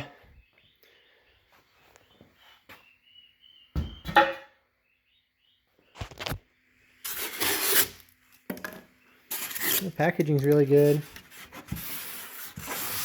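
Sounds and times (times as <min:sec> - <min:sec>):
packing material scraping: 0:07.0 - 0:08.0, 0:09.3 - 0:13.0.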